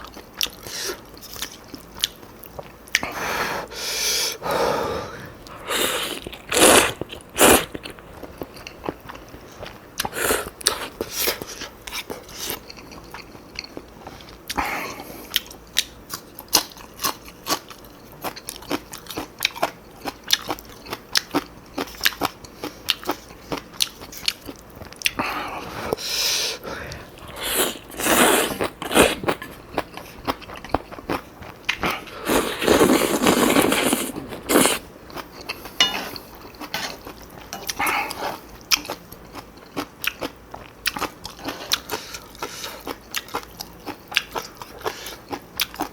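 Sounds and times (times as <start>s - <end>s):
food crunching: 15.3s - 25.3s, 26.9s - 45.9s
wet chewing: 26.9s - 45.9s.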